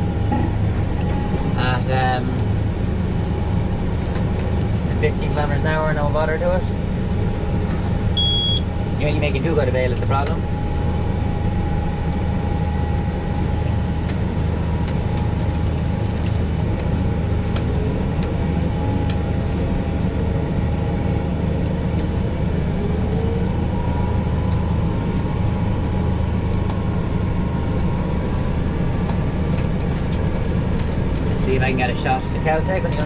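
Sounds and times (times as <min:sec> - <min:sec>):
tractor engine droning: 0:00.0 - 0:33.0
thin steady whine: 0:04.7 - 0:33.0.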